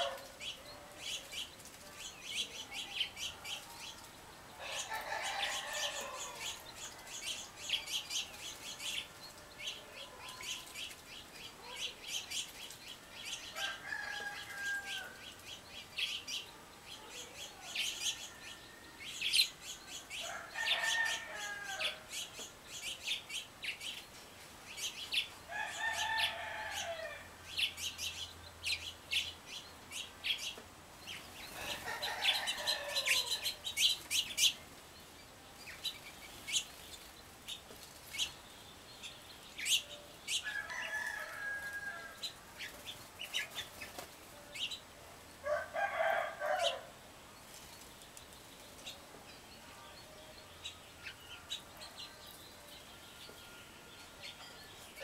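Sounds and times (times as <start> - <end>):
birds chipping and twittering: 0.0 - 55.0.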